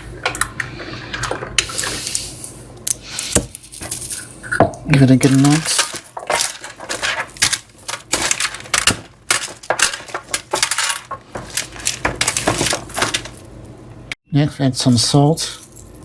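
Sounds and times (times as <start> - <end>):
potatoes clattering in a pan: 3.2 - 13.5.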